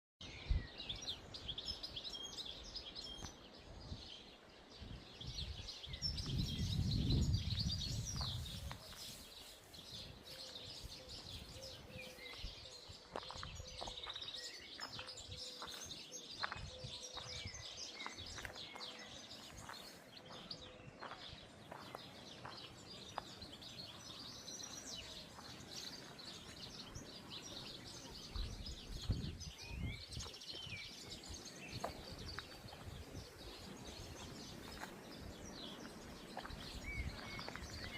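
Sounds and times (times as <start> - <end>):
wind rumbling on microphone: 0.2 - 14.3, 16.3 - 19.7, 26.7 - 37.9
birds chirping and singing: 0.2 - 37.9.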